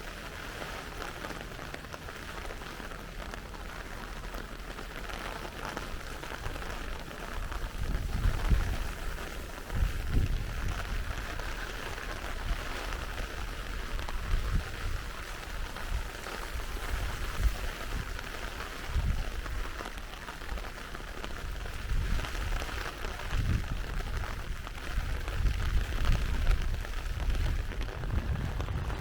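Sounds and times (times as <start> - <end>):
steady rain pattering: 0.0 - 29.0
low rumbles: 25.6 - 29.0.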